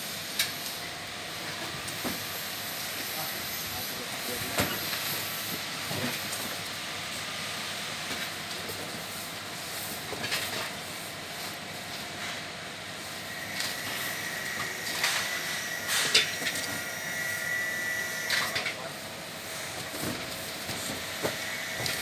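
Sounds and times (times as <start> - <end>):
milking machine hiss: 13.0 - 18.6, 19.4 - 22.0.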